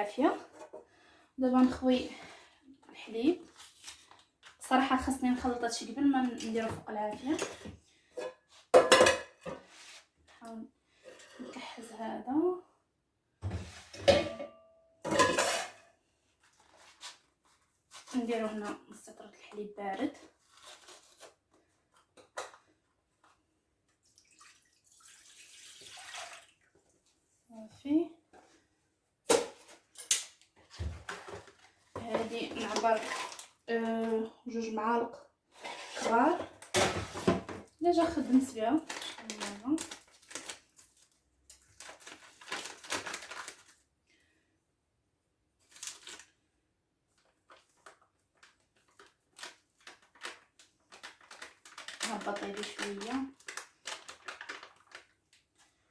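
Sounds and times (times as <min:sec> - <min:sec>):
milk pouring: 0:24.0 - 0:27.0
packet crinkling and rustling: 0:38.1 - 0:43.9, 0:45.6 - 0:46.4, 0:47.1 - 0:55.9.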